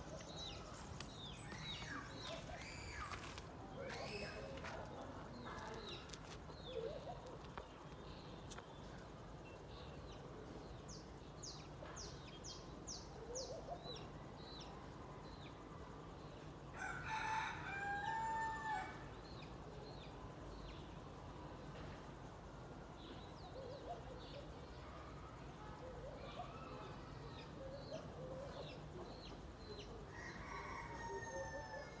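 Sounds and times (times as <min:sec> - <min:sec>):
small birds chirping: 0:00.0 - 0:14.1
rooster crowing: 0:16.8 - 0:19.0, 0:30.1 - 0:32.0.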